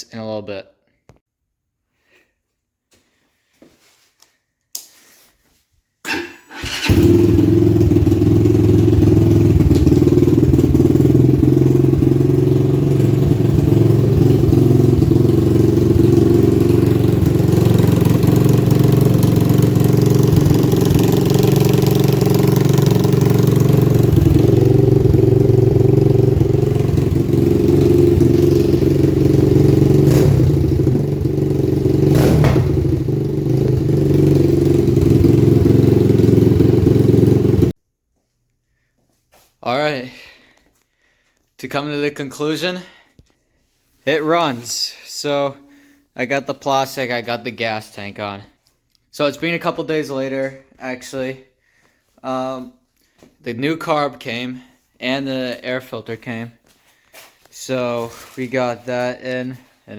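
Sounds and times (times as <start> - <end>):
motorcycle engine starting and running: 6.5 - 37.8.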